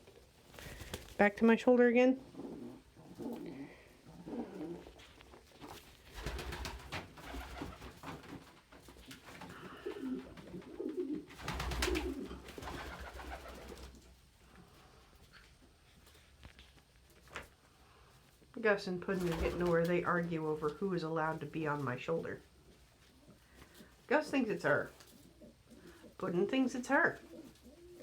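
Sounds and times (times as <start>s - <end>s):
pigeons cooing: 2.2s - 5.0s, 9.5s - 13.9s, 26.9s - 28.0s.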